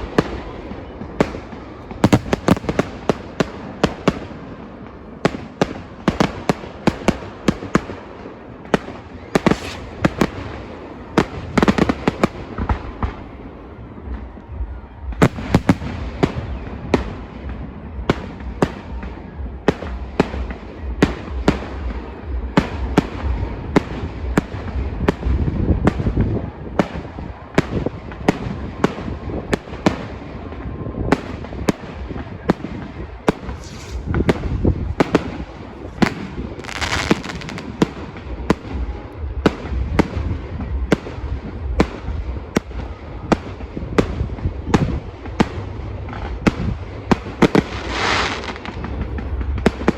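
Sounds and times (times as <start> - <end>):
crackling hiss: 0.0 - 14.6, 26.9 - 49.9
continuous low rumble: 0.0 - 49.9
fireworks bangs: 0.0 - 49.9.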